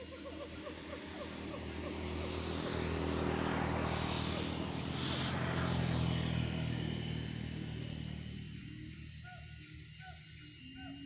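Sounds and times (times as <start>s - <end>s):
vehicle passing on road: 0.6s - 8.7s.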